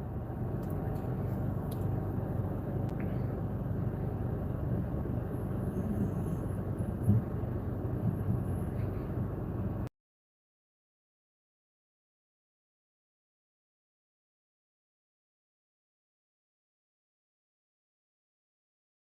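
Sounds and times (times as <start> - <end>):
vehicle interior rumble: 0.0 - 9.9.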